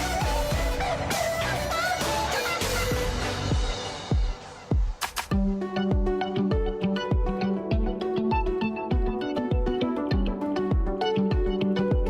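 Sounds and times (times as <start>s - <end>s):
deep kick drum: 0.0s - 1.0s, 2.9s - 12.0s
bass notes: 0.0s - 3.8s
electronic music with fast beat: 0.0s - 12.0s.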